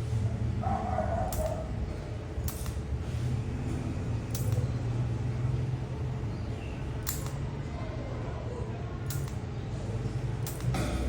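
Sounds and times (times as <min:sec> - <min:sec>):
low machine hum: 0:00.0 - 0:11.0
sharp metallic clicks: 0:01.2 - 0:01.7, 0:02.4 - 0:02.9, 0:04.2 - 0:04.9, 0:06.9 - 0:07.6, 0:09.0 - 0:09.7, 0:10.4 - 0:11.0.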